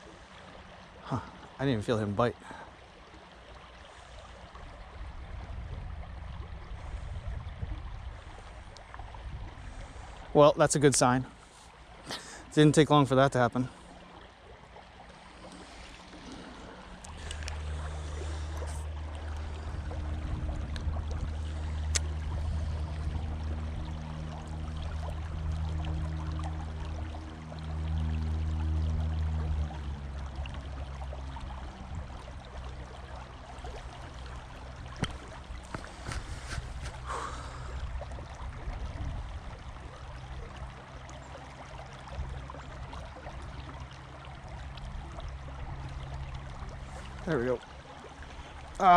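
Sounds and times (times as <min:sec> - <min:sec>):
creek water flowing: 0:00.0 - 0:48.9
low hum: 0:00.0 - 0:48.9
brief rustle: 0:35.0 - 0:37.0.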